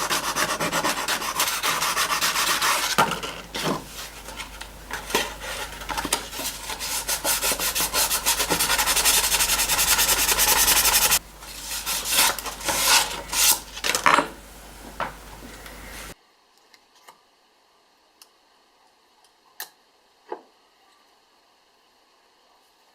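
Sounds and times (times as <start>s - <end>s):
rubbing on pocket knife: 3.9s - 13.7s.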